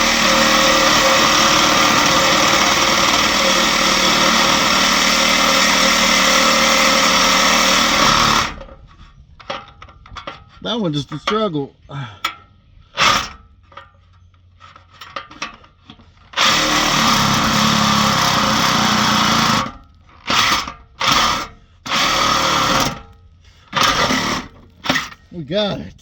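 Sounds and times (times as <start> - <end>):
power saw cutting exhaust pipe: 0.0 - 8.8, 13.0 - 13.4, 16.3 - 25.2.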